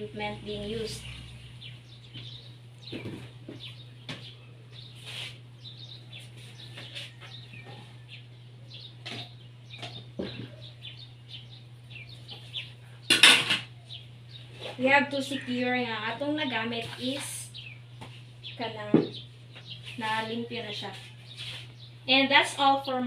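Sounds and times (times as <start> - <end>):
birds chirping faintly: 0.0 - 23.0
steady low hum: 0.0 - 23.0.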